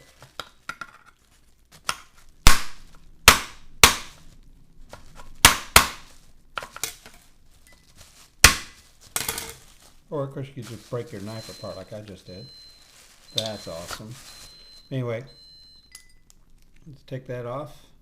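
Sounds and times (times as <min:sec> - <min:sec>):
knife hammered with knife: 0:02.5 - 0:04.2, 0:05.4 - 0:06.0.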